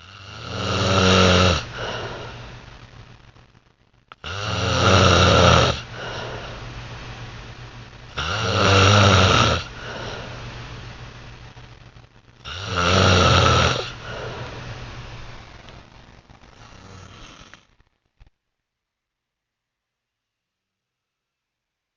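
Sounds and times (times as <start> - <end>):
man snoring: 0.0 - 2.4, 4.2 - 6.6, 8.1 - 10.4, 12.5 - 14.5, 16.6 - 17.7
quiet breathing: 0.0 - 3.4, 4.2 - 11.8, 12.4 - 17.8.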